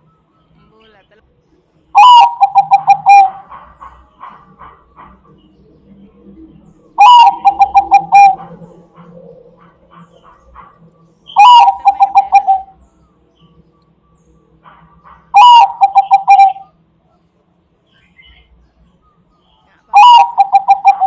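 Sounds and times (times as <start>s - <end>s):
faint chirps: 0.0s - 21.0s
dove cooing: 2.0s - 12.8s, 14.6s - 16.8s, 19.9s - 21.0s.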